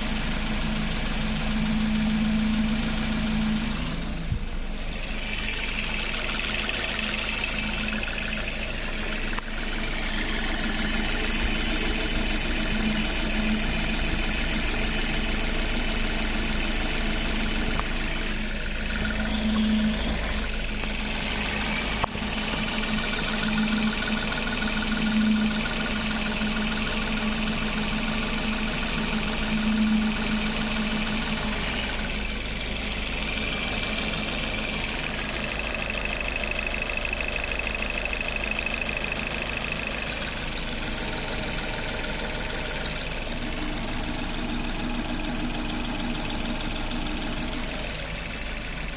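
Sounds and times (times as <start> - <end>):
car engine idling: 0.0 - 48.9.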